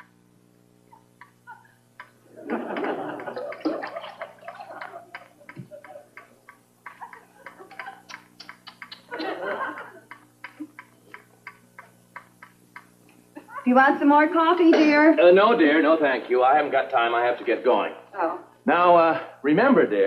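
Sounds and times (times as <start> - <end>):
audience laughing: 1.3 - 8.3, 9.1 - 11.2.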